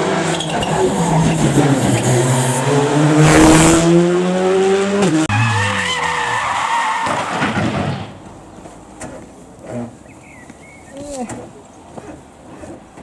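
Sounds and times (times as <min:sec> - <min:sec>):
tyres squealing and skidding: 0:00.0 - 0:04.0, 0:05.0 - 0:13.0
car engine accelerating: 0:00.0 - 0:06.8.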